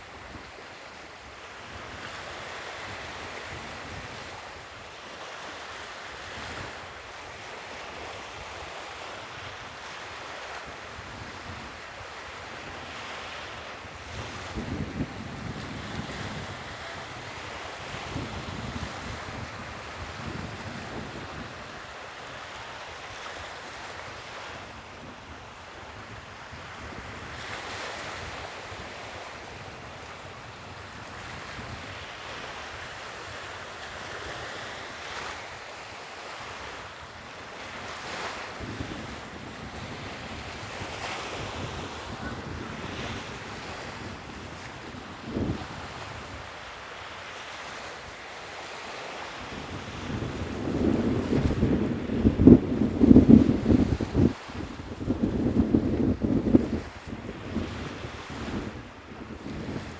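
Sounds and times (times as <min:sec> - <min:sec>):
wind buffeting the microphone: 0:14.0 - 0:21.9, 0:38.6 - 0:46.5, 0:49.4 - 0:59.9
sea waves washing in and out: 0:48.9 - 0:56.5.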